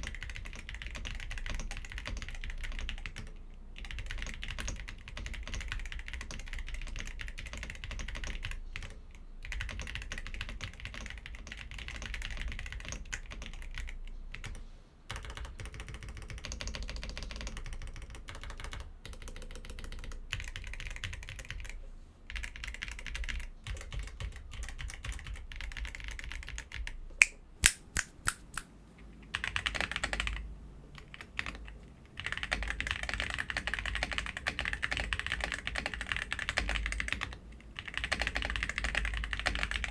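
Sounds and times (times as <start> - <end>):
mechanical keyboard typing: 0.0 - 26.9, 29.4 - 30.4, 31.0 - 39.9.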